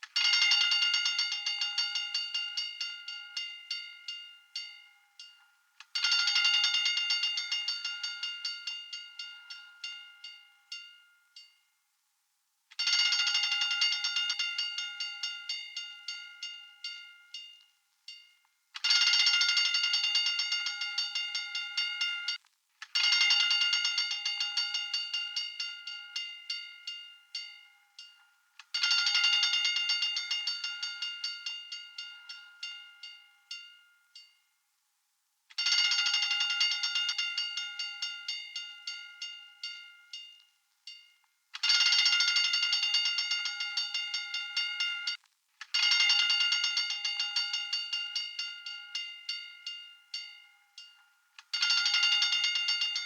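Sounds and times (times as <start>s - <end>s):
fire alarm bell ringing: 0.1s - 11.5s, 12.8s - 22.4s, 23.0s - 34.3s, 35.6s - 45.2s, 45.8s - 53.0s.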